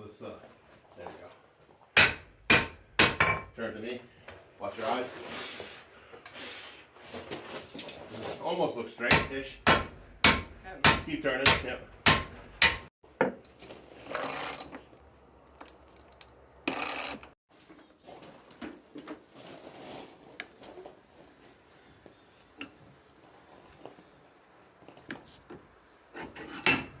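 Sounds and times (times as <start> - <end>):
iron and tools clinking: 26.2 - 27.0.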